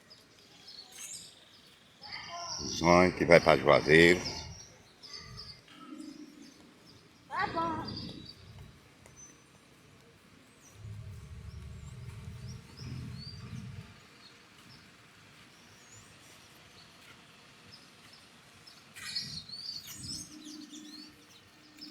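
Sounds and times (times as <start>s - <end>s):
small birds chirping: 0.0s - 21.9s
low rumble: 10.7s - 14.0s.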